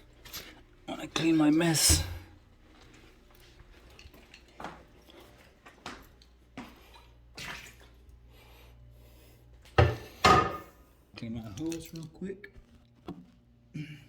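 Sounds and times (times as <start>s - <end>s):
water splashes and drips: 3.4s - 8.2s.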